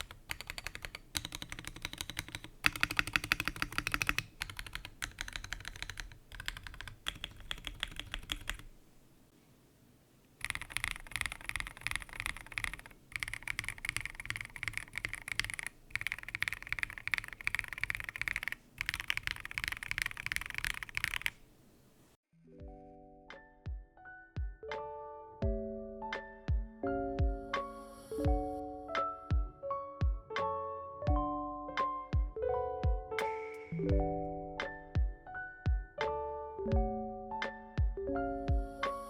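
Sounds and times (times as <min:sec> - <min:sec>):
mechanical keyboard typing: 0:00.0 - 0:08.7, 0:10.4 - 0:21.5.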